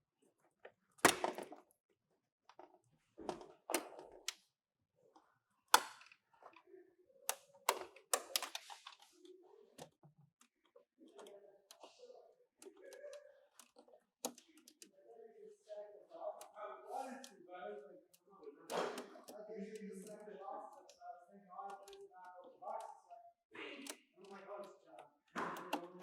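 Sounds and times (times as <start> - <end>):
plastic clicks and knocks: 0.6 - 1.7, 2.5 - 4.4, 5.7 - 6.6, 7.3 - 9.1, 18.6 - 20.2, 23.8 - 26.0.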